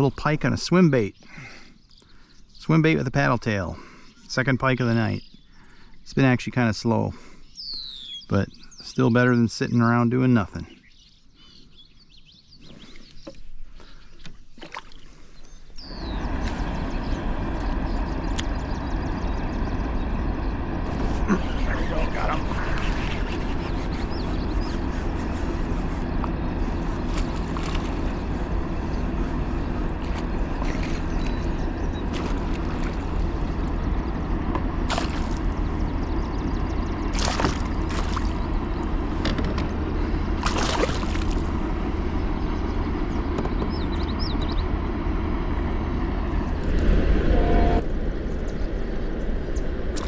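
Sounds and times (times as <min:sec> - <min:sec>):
water sloshing around a kayak: 0:12.7 - 0:17.1, 0:20.9 - 0:34.2, 0:34.8 - 0:35.9, 0:37.0 - 0:39.3, 0:40.2 - 0:42.0
steady low rumble: 0:15.5 - 0:50.0
sharp splashes or knocks: 0:34.9 - 0:35.5, 0:37.1 - 0:38.4, 0:40.4 - 0:41.6.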